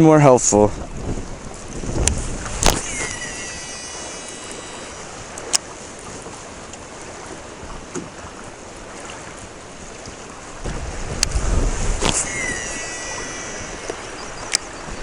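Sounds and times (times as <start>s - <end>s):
water noise: 0.0s - 15.0s
wind: 0.0s - 15.0s
sharp click: 2.0s - 3.1s, 13.8s - 14.7s.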